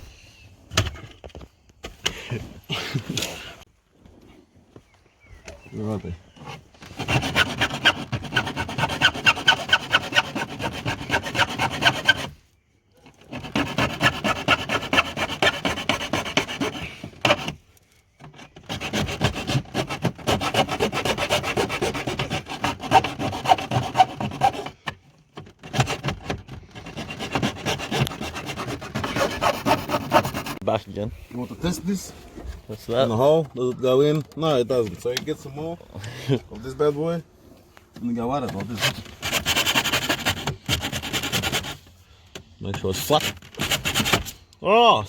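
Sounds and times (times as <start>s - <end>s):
file rasping on plastic: 6.4s - 12.4s, 13.2s - 17.6s, 18.2s - 30.6s, 38.6s - 41.9s, 42.8s - 44.4s.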